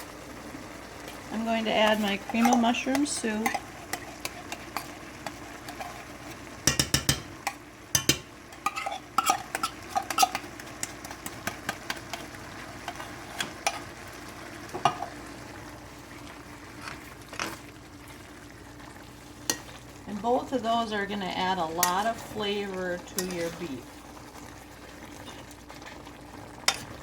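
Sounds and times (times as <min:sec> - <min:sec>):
meat sizzling in a pan: 0:00.0 - 0:27.0
spoon scraping and tapping pan: 0:01.9 - 0:13.9, 0:14.7 - 0:15.1, 0:19.5 - 0:19.7, 0:21.8 - 0:22.1, 0:23.1 - 0:23.5.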